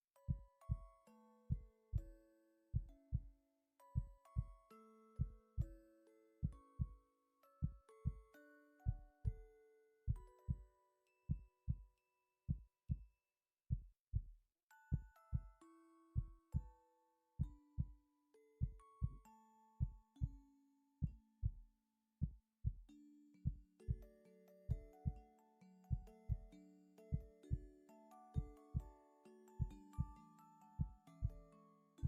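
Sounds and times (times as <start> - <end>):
soft melodic background music: 0.1 - 12.2, 14.7 - 21.4, 22.9 - 32.0
heartbeat thumps: 13.7 - 14.3.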